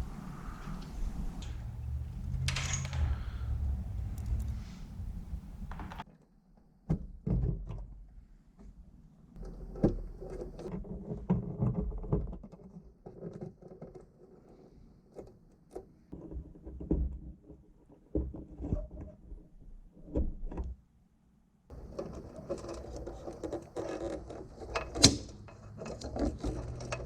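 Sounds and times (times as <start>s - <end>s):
clicks and knocks of handling parts: 0.0s - 6.0s
steady hiss: 0.0s - 6.0s.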